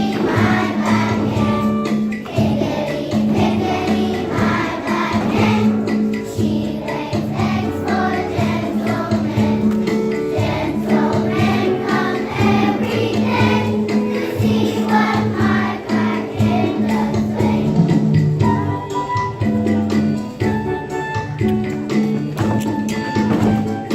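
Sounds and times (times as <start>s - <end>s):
children singing: 0.0s - 18.3s
instrumental backing with bass: 0.0s - 23.9s.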